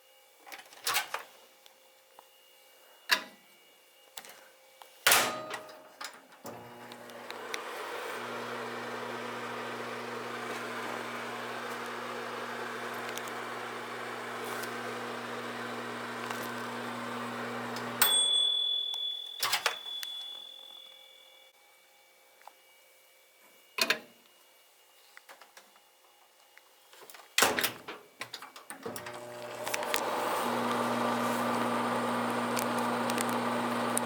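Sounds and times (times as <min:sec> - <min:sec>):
microwave oven humming: 0:06.5 - 0:20.4, 0:28.9 - 0:34.0.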